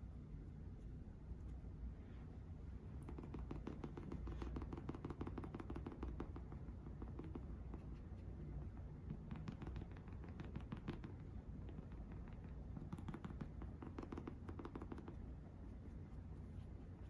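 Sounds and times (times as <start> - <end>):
low steady hum: 0.0 - 17.0
makeup items clicking and tapping: 3.0 - 7.9, 8.7 - 15.2.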